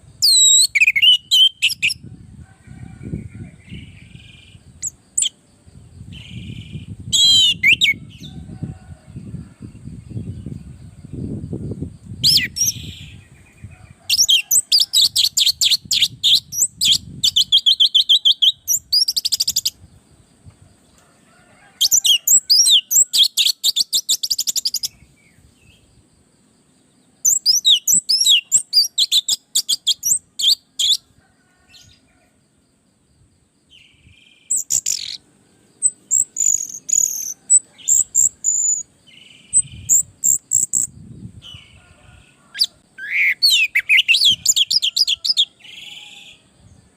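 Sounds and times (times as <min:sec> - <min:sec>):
thrush singing rapid chirps: 0:14.1 - 0:19.8, 0:21.9 - 0:25.0, 0:27.3 - 0:31.0, 0:34.0 - 0:35.2, 0:35.8 - 0:41.1.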